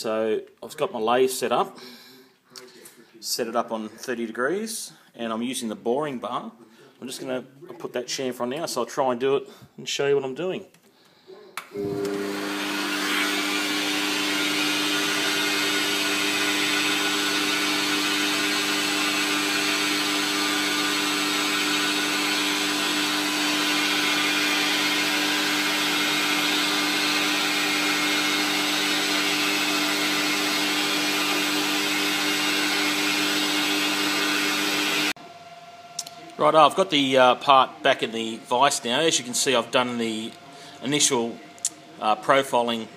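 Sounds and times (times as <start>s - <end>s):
metal lathe humming and whining: 11.8s - 35.1s.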